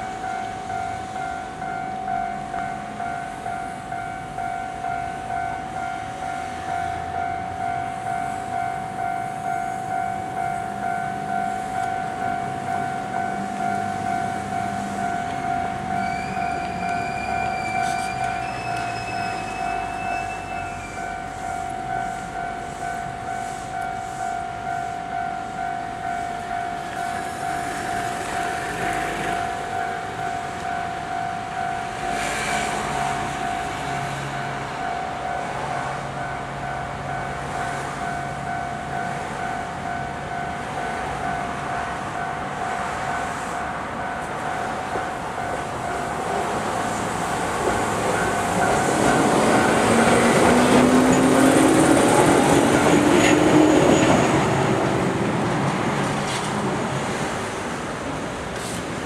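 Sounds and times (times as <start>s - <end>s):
level crossing warning bell: 0.0s - 55.5s
approaching train: 0.0s - 59.0s.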